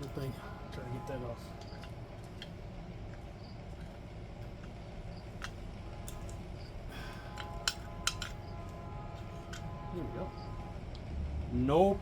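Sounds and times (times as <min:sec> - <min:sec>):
low background rumble: 0:00.0 - 0:12.0
hands clicking bulb socket: 0:07.3 - 0:08.4.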